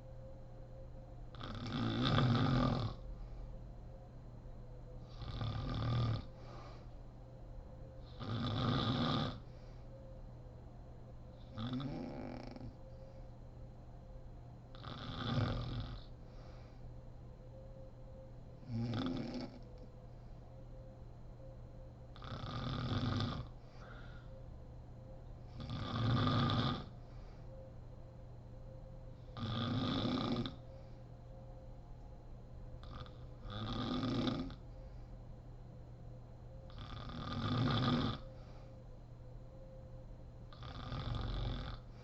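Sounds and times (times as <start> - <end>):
woman snoring: 1.3 - 3.0, 5.1 - 6.3, 8.1 - 9.5, 11.5 - 12.8, 14.7 - 16.1, 18.6 - 19.6, 22.2 - 24.3, 25.5 - 27.0, 29.3 - 30.6, 32.8 - 34.6, 36.7 - 38.3, 40.5 - 42.0
soft breath: 2.9 - 3.8, 6.2 - 7.2, 9.3 - 10.2, 12.5 - 13.5, 16.0 - 17.2, 23.4 - 24.5, 26.8 - 27.8, 30.5 - 31.5, 34.5 - 35.5, 38.2 - 39.1.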